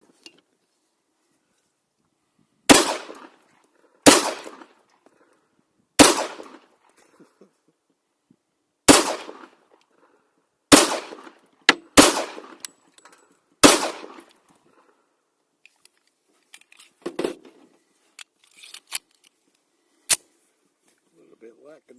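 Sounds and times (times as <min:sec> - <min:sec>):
pistol shots echoing: 0:02.7 - 0:03.3, 0:04.0 - 0:04.7, 0:06.0 - 0:06.6, 0:08.9 - 0:09.5, 0:10.7 - 0:11.3, 0:11.9 - 0:12.6, 0:13.6 - 0:14.3.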